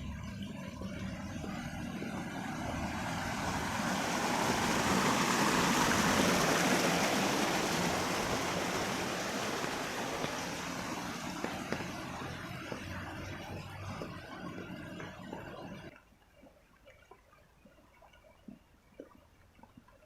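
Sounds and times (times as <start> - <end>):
tyres hissing on wet road: 1.4 - 15.2.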